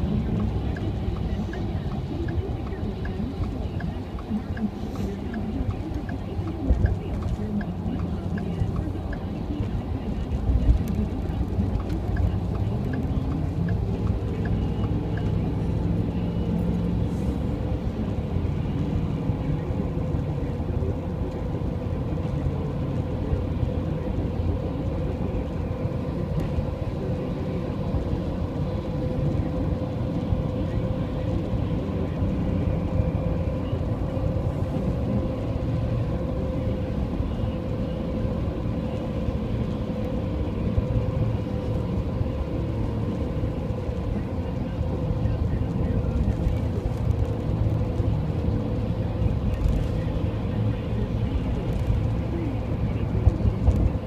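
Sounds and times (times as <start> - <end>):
car road and engine rumble: 0.0 - 54.0.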